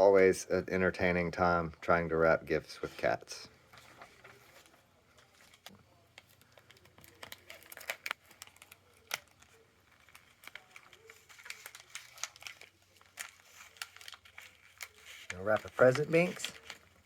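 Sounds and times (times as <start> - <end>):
wrapping paper crinkling: 3.6 - 17.0.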